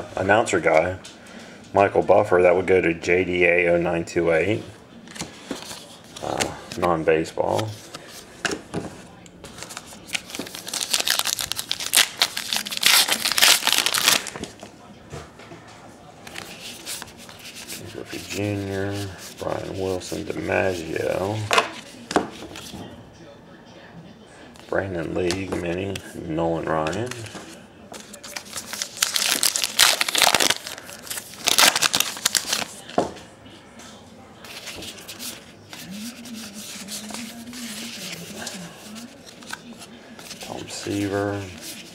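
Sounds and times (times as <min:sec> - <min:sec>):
cards rustling: 0:05.1 - 0:14.7, 0:16.2 - 0:22.8, 0:26.6 - 0:33.0, 0:34.4 - 0:41.9
wrapper torn open and crinkled: 0:10.1 - 0:14.4, 0:28.3 - 0:32.8.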